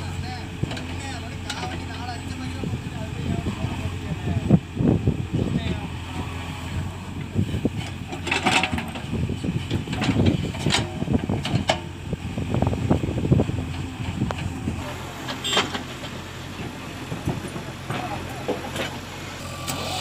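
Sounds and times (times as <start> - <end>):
heavy machinery diesel engine: 0.0 - 20.0
clanks and rattles: 0.6 - 2.0, 7.6 - 12.0, 13.6 - 19.1.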